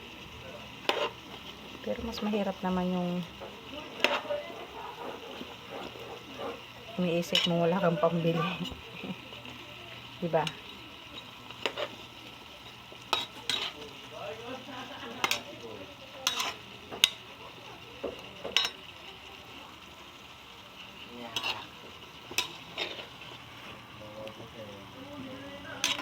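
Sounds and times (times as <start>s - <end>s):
vegetables sizzling in a pan: 0.0s - 26.0s
utensil scraping a pan: 0.8s - 9.1s, 10.4s - 12.0s, 13.1s - 13.9s, 16.2s - 17.2s, 21.2s - 23.7s, 25.8s - 26.0s.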